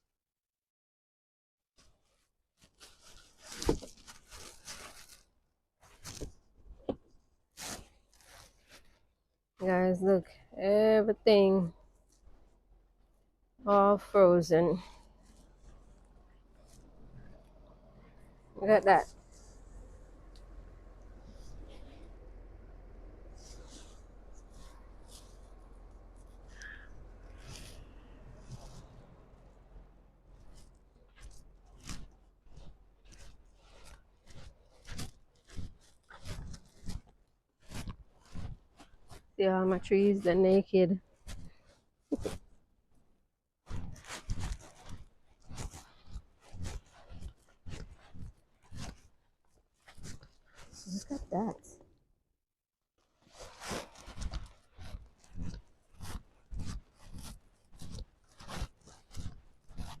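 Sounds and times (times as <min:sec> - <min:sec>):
footsteps crunching on snow: 0:14.8 - 0:39.3, 0:53.2 - 1:00.0.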